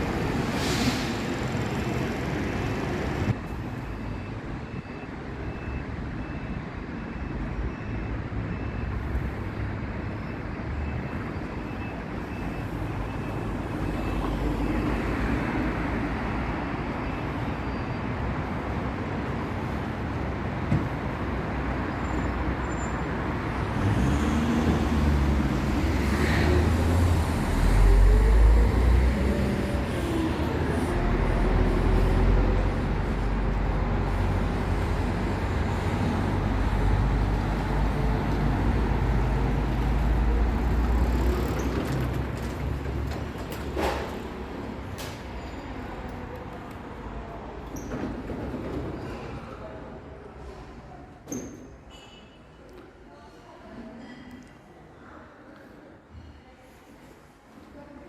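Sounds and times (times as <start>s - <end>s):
road and traffic noise: 0.0s - 58.0s
vehicle engine rumble: 18.3s - 49.8s.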